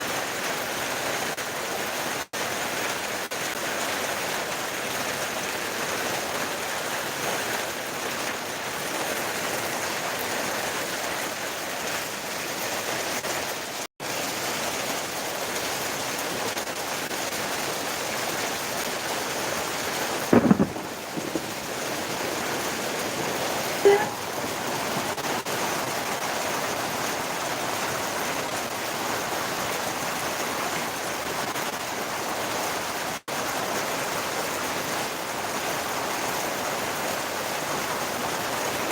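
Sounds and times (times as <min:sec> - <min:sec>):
steady rainfall: 0:00.0 - 0:38.9
low thump: 0:20.3 - 0:21.8.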